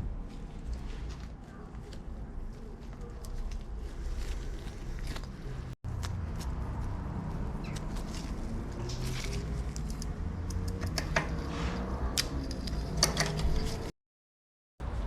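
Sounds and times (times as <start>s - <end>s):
metallic clicks of bike parts: 9.6s - 11.4s, 12.1s - 13.9s.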